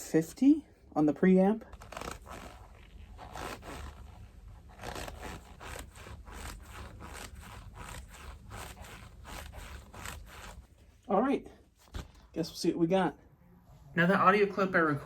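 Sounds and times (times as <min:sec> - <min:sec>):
glove creaking and squeaking: 0:01.6 - 0:11.0.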